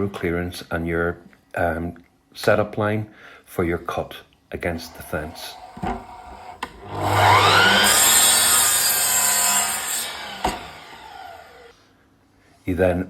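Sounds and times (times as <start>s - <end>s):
saw click: 4.8s - 11.3s
mitre saw cutting wood: 4.8s - 11.7s.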